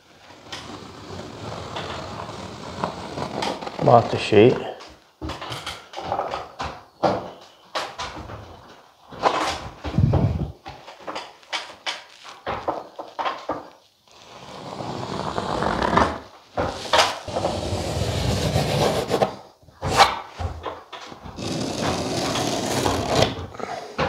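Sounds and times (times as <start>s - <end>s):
pencil scraping along plasterboard: 0.2s - 3.9s, 14.1s - 20.0s, 21.3s - 23.4s.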